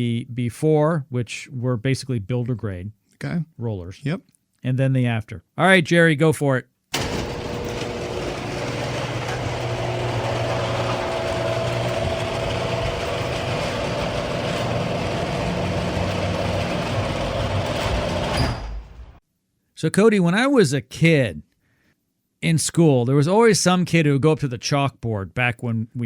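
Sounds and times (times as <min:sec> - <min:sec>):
low motor hum: 0:07.0 - 0:18.4
garage door grinding and rattling: 0:07.0 - 0:19.2.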